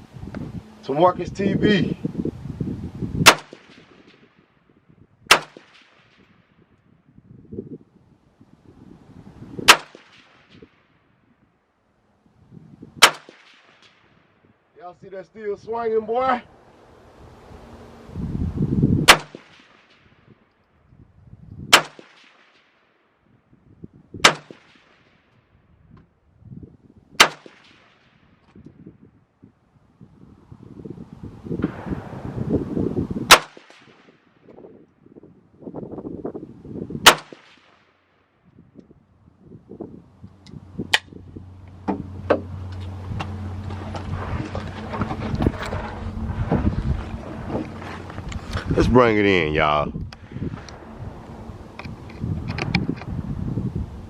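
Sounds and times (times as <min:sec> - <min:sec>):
rifle shots: 0:03.2 - 0:04.3, 0:05.3 - 0:06.4, 0:09.6 - 0:10.7, 0:13.0 - 0:14.1, 0:19.0 - 0:20.1, 0:21.7 - 0:22.8, 0:24.2 - 0:25.1, 0:27.2 - 0:28.1, 0:33.3 - 0:34.2, 0:37.0 - 0:37.9.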